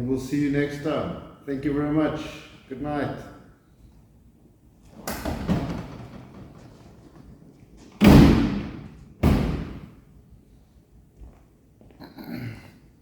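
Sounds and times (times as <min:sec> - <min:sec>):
loud slams: 0:08.0 - 0:10.0.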